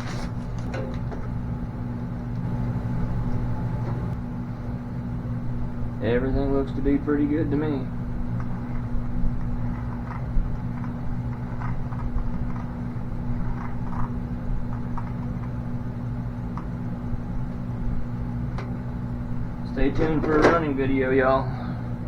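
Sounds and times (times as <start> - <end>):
steady low hum: 0.0 - 22.0.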